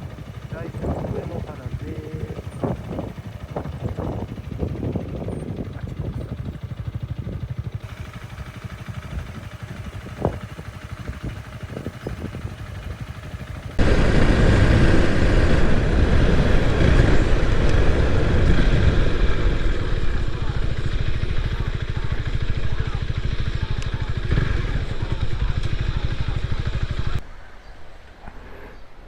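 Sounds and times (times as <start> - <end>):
motorcycle engine pulsing: 0.0 - 27.2
dense rush of noise: 13.7 - 29.0.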